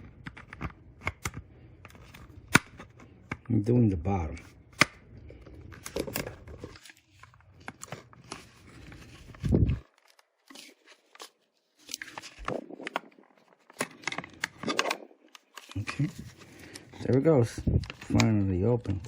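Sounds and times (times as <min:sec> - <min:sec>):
plastic clips clicking and creaking: 0:00.0 - 0:03.5, 0:11.8 - 0:19.0.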